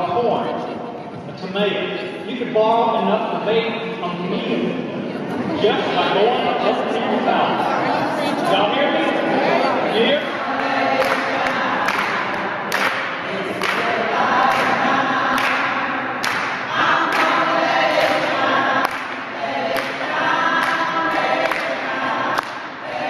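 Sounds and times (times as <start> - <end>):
choir singing: 5.3 - 23.0.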